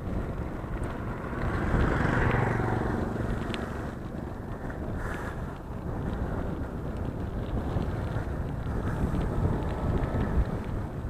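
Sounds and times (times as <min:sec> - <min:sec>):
wind rumble on microphone: 0:00.0 - 0:11.0
vehicle engine passing by: 0:00.6 - 0:04.4.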